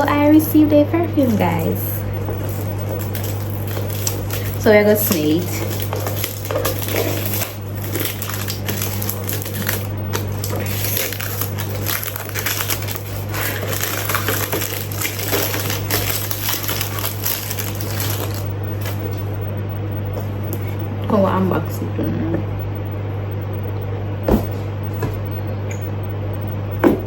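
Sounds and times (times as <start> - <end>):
steady low hum: 0.0 - 27.0
packaging crinkling and rustling: 0.1 - 19.4
small crackles and clicks: 0.1 - 20.9.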